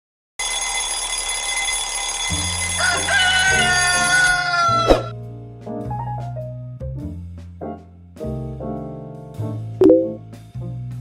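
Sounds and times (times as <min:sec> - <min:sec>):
alarm clock ringing: 0:00.4 - 0:04.9
piano-led music with a beat: 0:02.3 - 0:11.0.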